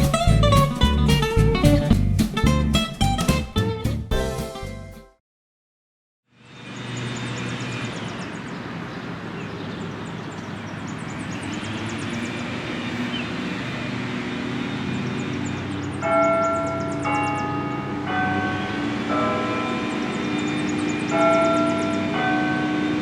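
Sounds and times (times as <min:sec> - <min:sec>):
busy road traffic: 0:06.3 - 0:23.0
bell tower bells ringing: 0:15.6 - 0:23.0.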